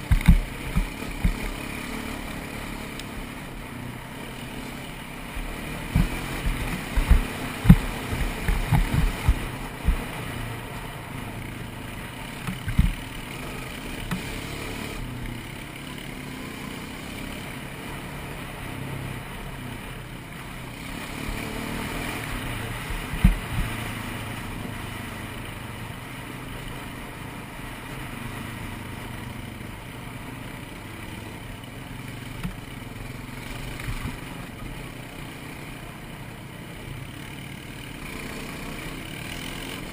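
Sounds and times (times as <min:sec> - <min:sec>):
sharp low thumps: 0:00.0 - 0:01.6, 0:05.4 - 0:10.4, 0:12.5 - 0:13.1, 0:22.4 - 0:23.8
quad engine running: 0:00.0 - 0:39.9.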